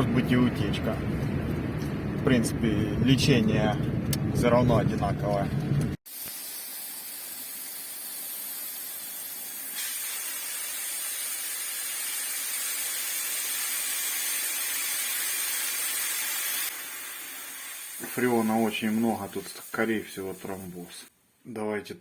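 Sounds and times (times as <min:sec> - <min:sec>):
refrigerant hissing: 0:06.0 - 0:21.1.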